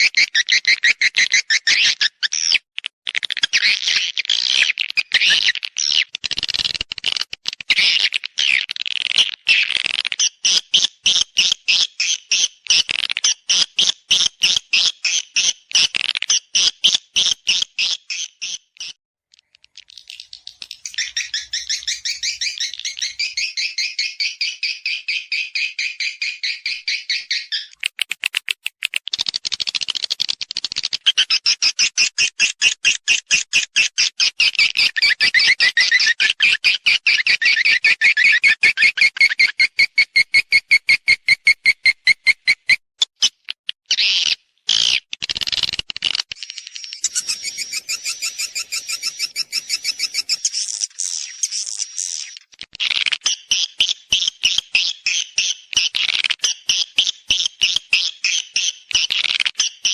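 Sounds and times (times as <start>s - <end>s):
high bird chirps: 18.2s - 27.9s, 46.5s - 52.5s.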